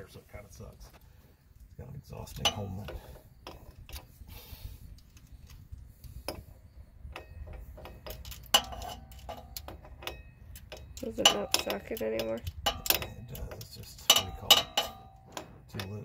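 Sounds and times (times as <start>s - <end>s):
small metal clinks: 1.7s - 4.2s, 4.8s - 16.0s.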